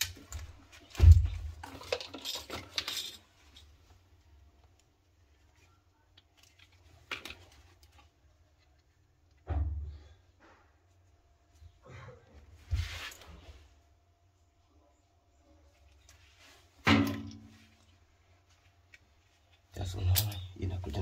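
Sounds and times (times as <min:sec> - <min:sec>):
small parts and tools clattering: 0:00.0 - 0:04.0, 0:06.1 - 0:08.8, 0:20.0 - 0:21.0.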